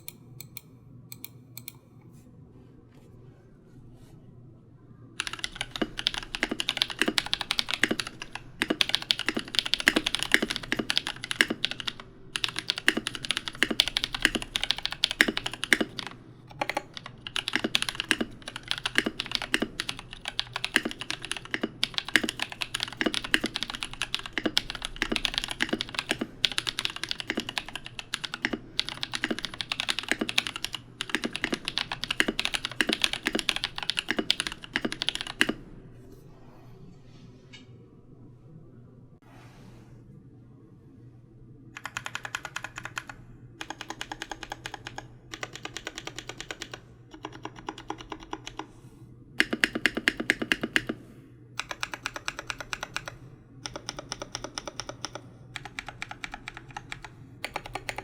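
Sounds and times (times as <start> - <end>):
fast mechanical keyboard typing: 5.2 - 35.7, 41.8 - 48.7, 49.4 - 58.0.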